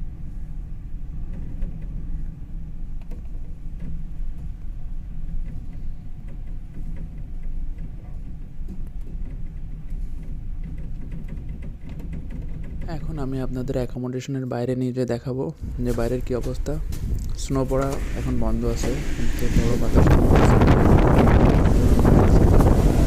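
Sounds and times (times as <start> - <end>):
low ship rumble: 0.0 - 23.0
light clicks and rattles: 1.3 - 13.9.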